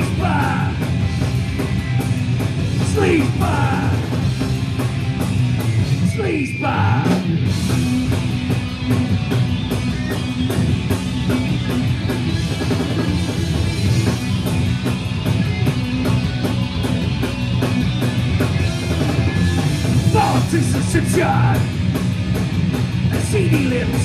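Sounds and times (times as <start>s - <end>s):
fast drum kit beat: 0.0s - 6.2s, 7.0s - 24.0s
bass guitar: 0.0s - 24.0s
distorted electric guitar: 0.0s - 24.0s.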